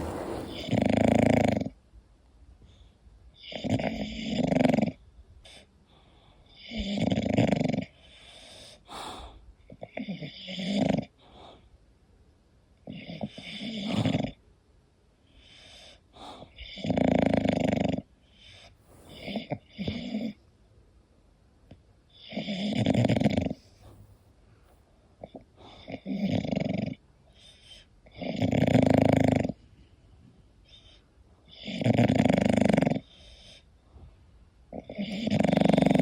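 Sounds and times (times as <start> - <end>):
dog snoring: 0.0 - 1.8, 3.4 - 5.6, 6.5 - 8.2, 8.9 - 11.2, 12.9 - 14.4, 16.2 - 20.4, 22.2 - 24.2, 25.2 - 29.6, 30.7 - 33.6, 34.7 - 36.0.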